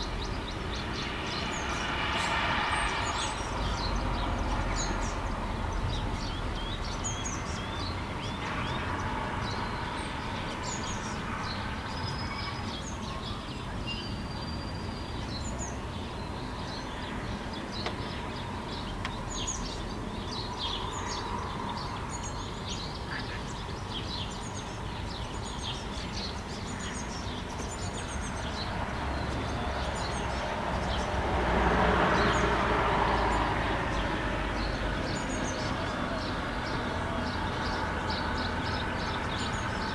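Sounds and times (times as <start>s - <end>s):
small birds chirping: 0.0s - 39.9s
rushing noise: 0.1s - 5.7s.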